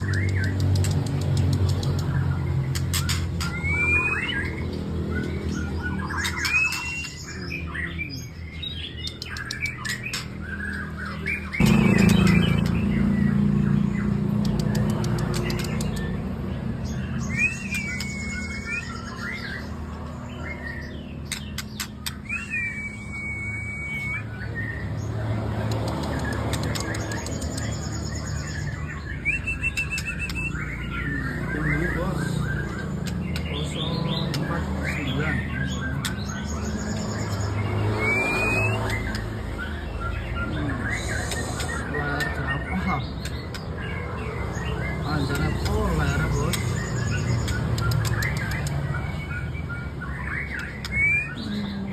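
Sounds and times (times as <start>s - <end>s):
bird chattering and clicking: 0.0s - 7.2s, 8.9s - 19.9s, 21.2s - 22.7s, 24.9s - 40.0s, 40.9s - 51.3s
bird singing clear rising whistles: 3.0s - 7.7s, 17.2s - 19.5s, 22.0s - 24.8s, 26.0s - 33.2s, 34.9s - 40.0s, 49.3s - 51.6s.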